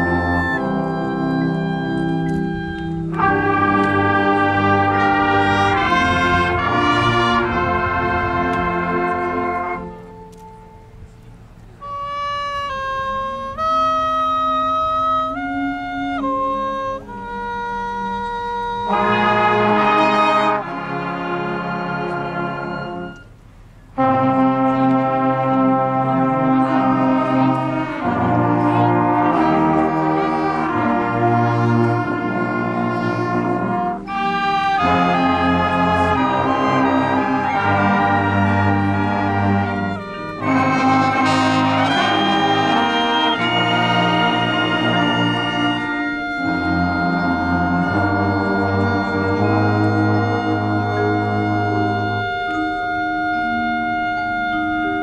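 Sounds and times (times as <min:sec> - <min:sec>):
marching band brass chords: 0:00.0 - 0:55.0.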